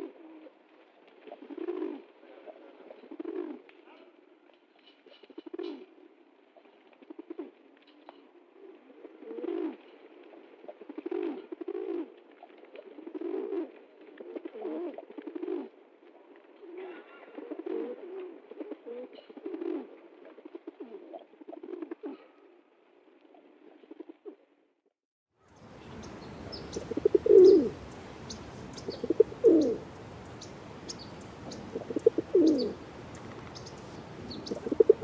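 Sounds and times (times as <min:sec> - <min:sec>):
pigeons cooing: 0:01.2 - 0:04.1, 0:05.0 - 0:06.0, 0:06.6 - 0:09.9, 0:10.6 - 0:15.8, 0:16.6 - 0:22.6, 0:25.9 - 0:35.0.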